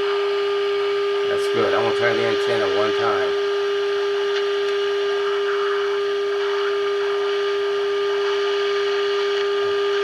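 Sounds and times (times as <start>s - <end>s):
steady test tone: 0.0s - 10.0s.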